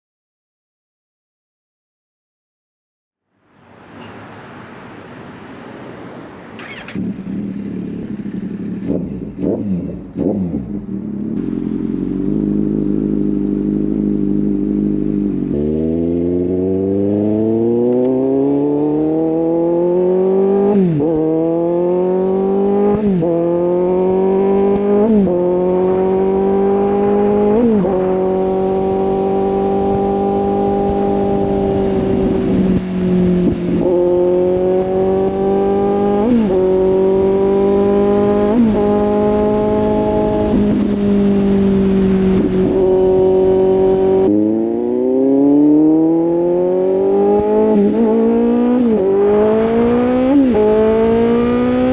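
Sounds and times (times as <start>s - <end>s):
motorcycle accelerating through gears: 6.6s - 51.9s
motorcycle engine revving: 6.6s - 51.9s.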